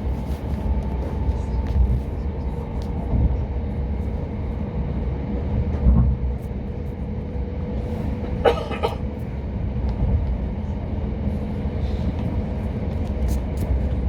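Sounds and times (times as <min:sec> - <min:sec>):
train rumbling inside coach: 0:00.0 - 0:14.0
person coughing: 0:08.4 - 0:09.1.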